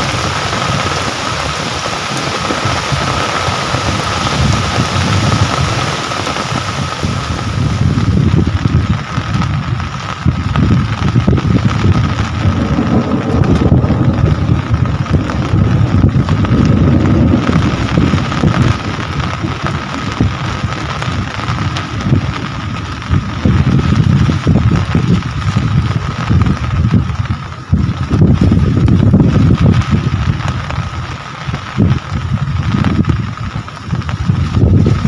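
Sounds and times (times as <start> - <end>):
heavy low rumble: 0.0 - 35.0
rain falling: 0.0 - 35.0.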